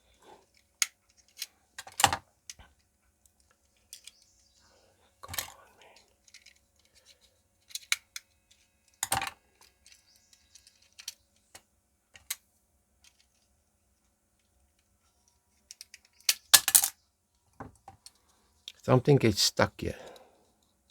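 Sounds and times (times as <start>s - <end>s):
small plastic clicks and knocks: 0.5s - 4.4s, 5.2s - 12.4s.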